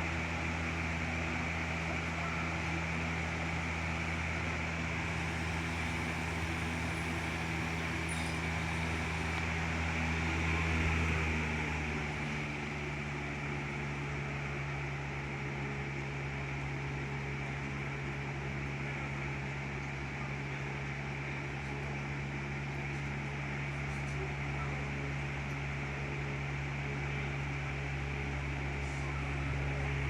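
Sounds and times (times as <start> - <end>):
box fan motor hum: 0.0 - 14.4.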